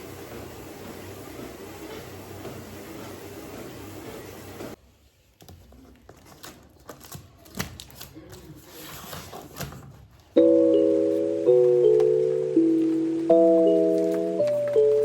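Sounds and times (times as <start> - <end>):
bell-like music notes: 10.4 - 15.0.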